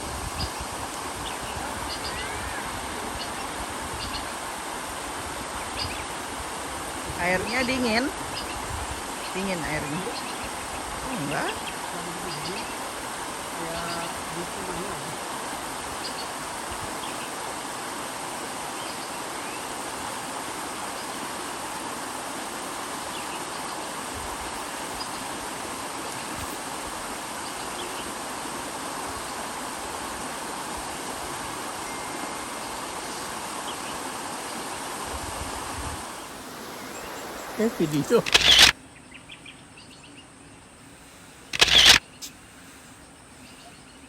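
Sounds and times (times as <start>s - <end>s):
water rushing: 0.0s - 38.8s
faint bird chirps: 0.4s - 4.3s, 36.2s - 40.8s, 41.5s - 42.4s, 43.0s - 44.0s.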